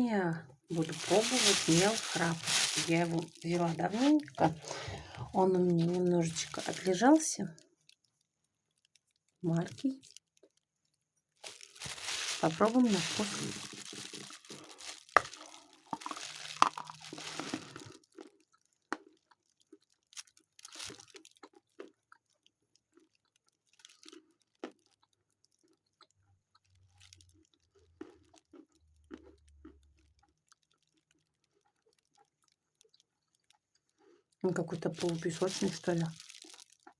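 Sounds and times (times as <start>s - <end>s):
crunching crackle: 0.7s - 36.9s
chewing: 13.0s - 34.4s, 36.1s - 36.9s.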